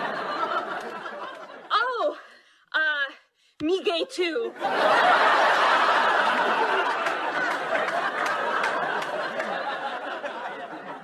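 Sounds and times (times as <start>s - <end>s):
crowd laughing: 0.0s - 1.7s, 4.5s - 11.0s.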